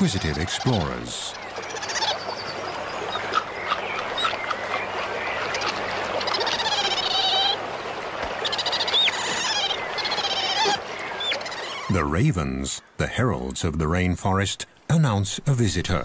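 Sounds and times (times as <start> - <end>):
raspy animal calls: 0.0 - 7.7, 8.4 - 12.0.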